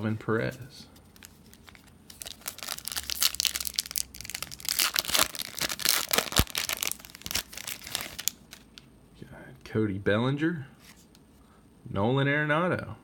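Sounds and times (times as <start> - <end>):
foil wrapper tearing and crinkling: 1.2 - 8.8.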